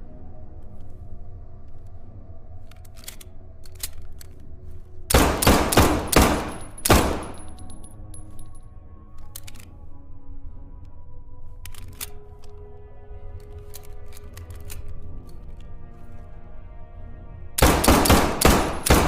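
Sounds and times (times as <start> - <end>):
pistol shots echoing: 5.1 - 7.6, 17.6 - 19.0.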